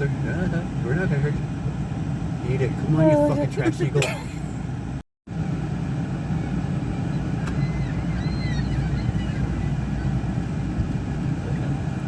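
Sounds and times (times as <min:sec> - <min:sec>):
car idling: 0:00.0 - 0:12.0
seagull cries: 0:07.4 - 0:10.2.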